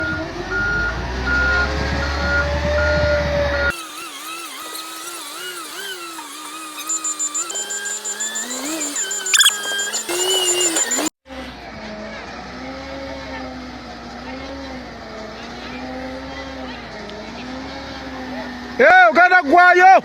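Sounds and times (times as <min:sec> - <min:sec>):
reversing alarm beeping: 0:04.8 - 0:11.1
wavering pitched sound: 0:05.6 - 0:11.1.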